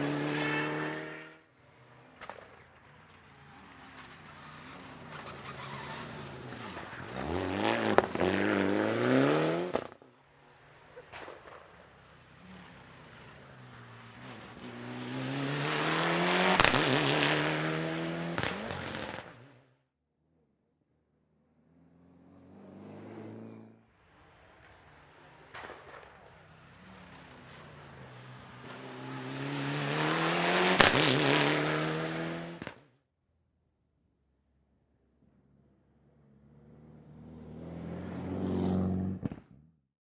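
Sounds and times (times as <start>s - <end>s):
rally car engine revving by: 0.0s - 1.4s, 3.6s - 10.0s, 12.3s - 19.7s, 21.7s - 23.8s, 26.7s - 32.8s, 36.4s - 39.4s.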